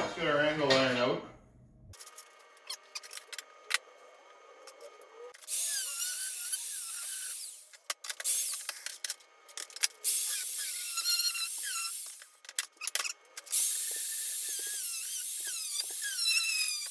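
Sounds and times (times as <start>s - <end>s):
power tool squealing on metal: 10.1s - 16.9s.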